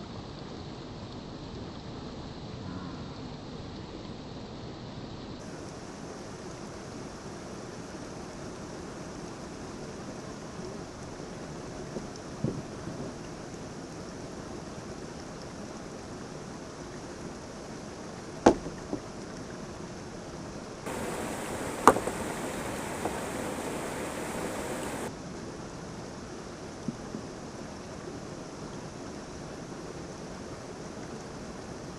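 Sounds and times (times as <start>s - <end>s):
sharp knocks: 20.9s - 25.1s
waterfall rushing: 20.9s - 25.1s.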